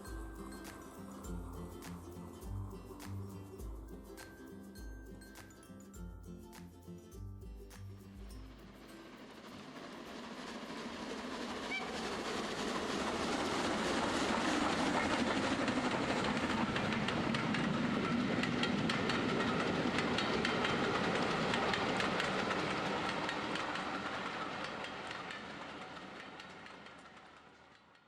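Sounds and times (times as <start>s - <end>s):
model train wheels clicking: 8.5s - 28.0s.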